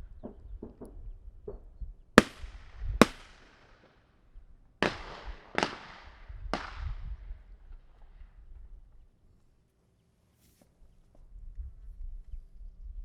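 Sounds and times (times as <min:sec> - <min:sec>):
gunshots with echo: 0:02.2 - 0:03.8, 0:04.8 - 0:07.1.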